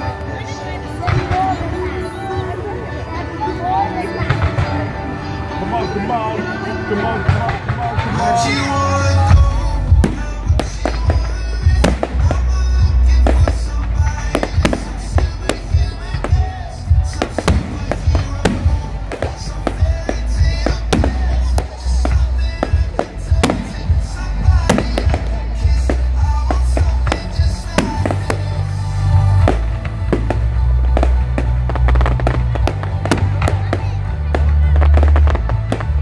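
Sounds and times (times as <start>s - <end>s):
music: 0.0s - 36.0s
fireworks banging: 7.2s - 36.0s.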